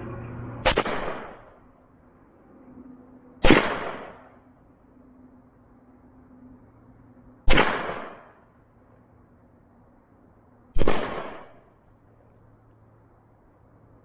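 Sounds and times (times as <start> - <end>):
gunshots with echo: 0.6 - 1.5, 3.4 - 4.3, 7.5 - 8.3, 10.8 - 11.6.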